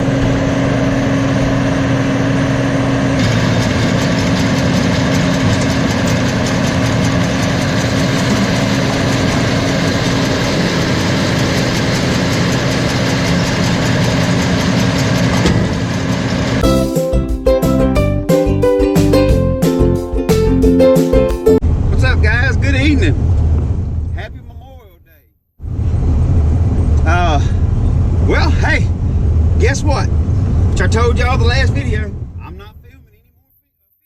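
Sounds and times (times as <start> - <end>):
engine humming steadily: 0.0 - 17.0, 25.7 - 33.2.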